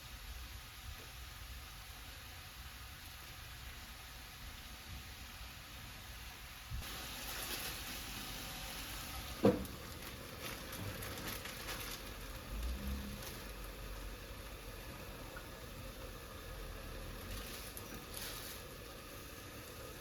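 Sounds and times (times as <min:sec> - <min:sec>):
food sizzling in a pan: 0:00.0 - 0:20.0.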